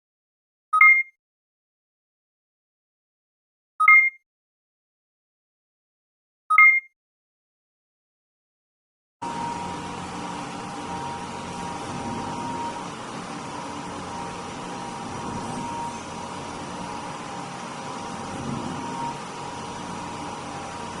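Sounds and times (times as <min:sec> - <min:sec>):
blender motor hum and whine: 0:09.2 - 0:21.0.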